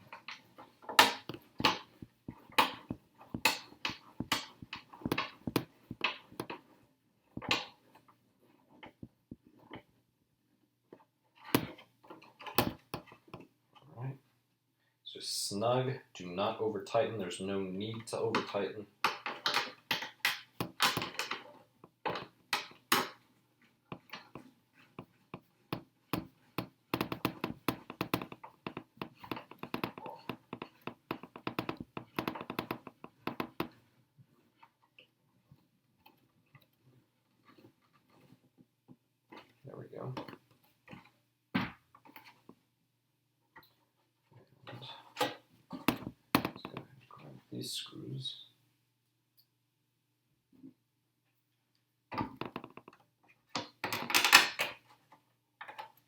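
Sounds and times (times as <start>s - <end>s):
plastic parts clicking and tapping: 0.0s - 6.7s, 18.1s - 23.2s, 23.9s - 33.8s, 52.1s - 56.0s.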